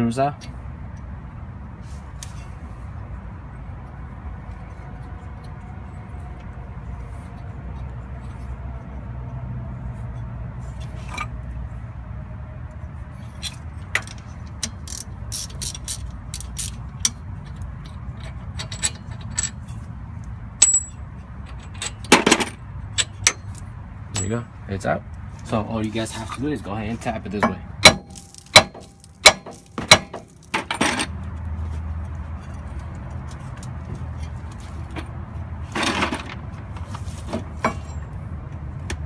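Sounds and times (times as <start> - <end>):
ratchet wrench clicking: 13.4 - 19.6.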